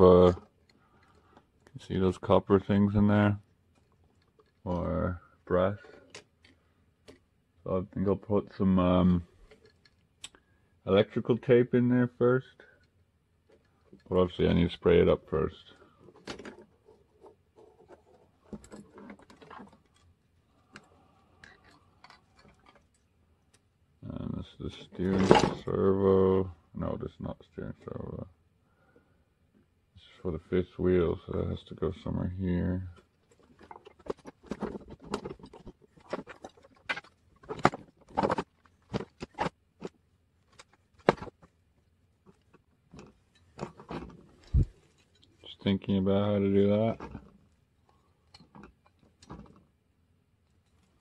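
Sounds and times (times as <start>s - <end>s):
small parts clicking and knocking: 0.0s - 7.5s, 9.2s - 10.6s, 12.6s - 14.6s, 15.6s - 23.7s, 32.8s - 45.6s, 46.3s - 49.8s
small parts clicking: 17.6s - 23.7s.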